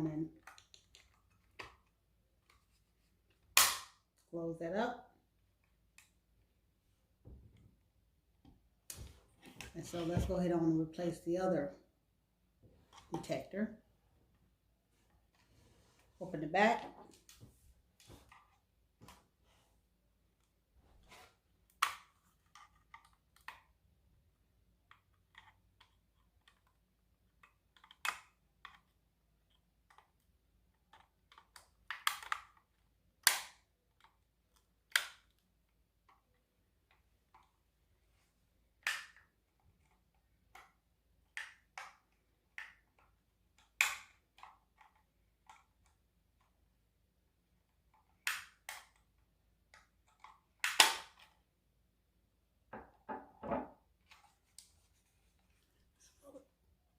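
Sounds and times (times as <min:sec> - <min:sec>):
plastic clicks and snaps: 0:30.9 - 0:35.4, 0:48.2 - 0:51.4.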